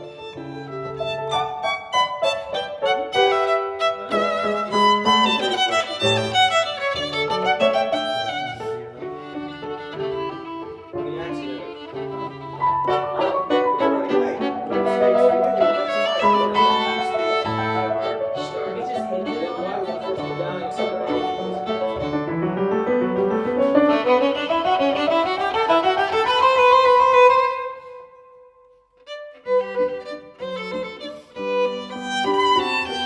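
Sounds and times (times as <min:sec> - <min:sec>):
violin with piano music: 0:00.0 - 0:28.2, 0:29.0 - 0:33.0.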